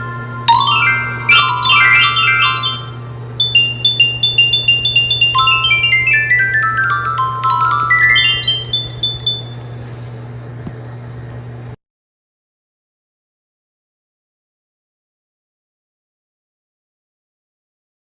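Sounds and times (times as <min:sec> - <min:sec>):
bell-like chime tune: 0:00.0 - 0:09.7
steady low hum: 0:00.0 - 0:11.8.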